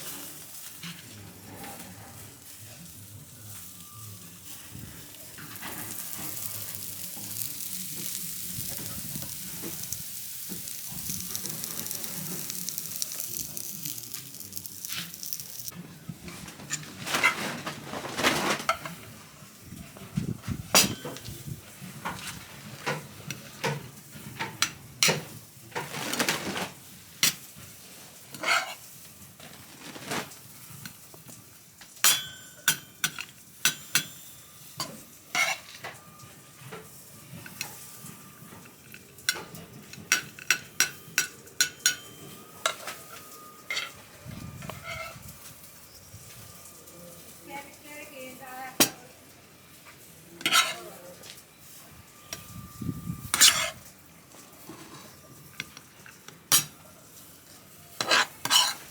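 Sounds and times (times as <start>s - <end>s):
frying sizzle: 0.0s - 1.2s, 2.4s - 16.9s, 18.6s - 58.9s
metal cookware clinking: 20.8s - 21.4s, 32.0s - 36.0s, 38.9s - 44.0s, 50.4s - 51.0s, 53.2s - 53.9s, 54.6s - 57.0s, 57.9s - 58.9s.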